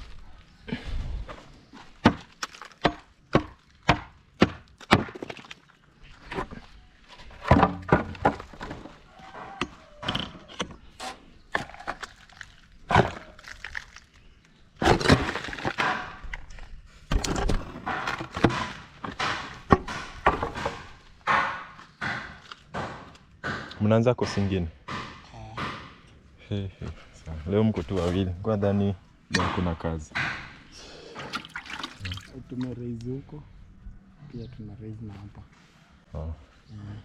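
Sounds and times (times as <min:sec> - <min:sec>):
sharp knocks on timber: 0:02.0 - 0:05.3, 0:17.1 - 0:26.0, 0:29.3 - 0:30.6
boards scraping and clattering: 0:04.5 - 0:13.4, 0:14.8 - 0:23.2.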